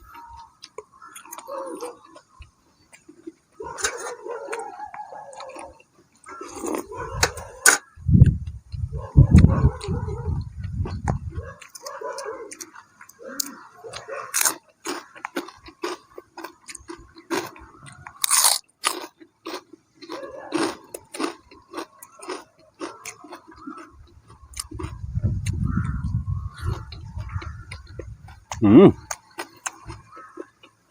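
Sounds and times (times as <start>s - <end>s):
person chewing crunchy food: 0.0s - 30.9s
wet mouth sounds: 5.4s - 11.9s, 12.5s - 30.6s
wind rumble on microphone: 6.9s - 11.6s, 24.0s - 28.9s.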